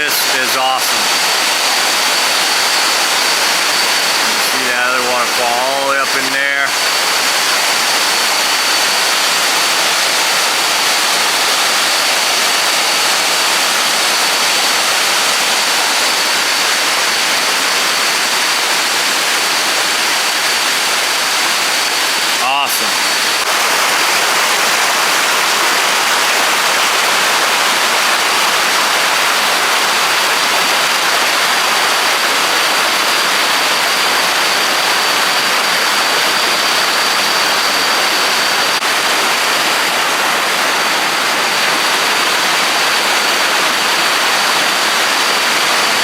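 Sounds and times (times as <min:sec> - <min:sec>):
thin high tone: 0:00.0 - 0:10.0, 0:20.3 - 0:25.8
waterfall rushing: 0:00.0 - 0:46.0.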